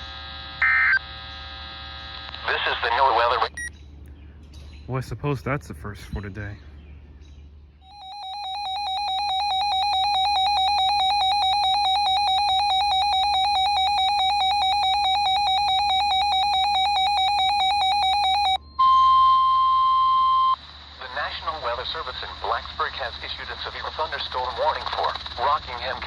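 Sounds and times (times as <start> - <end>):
steady alarm tone: 7.8 - 20.6
high electronic beeping: 7.9 - 20.6.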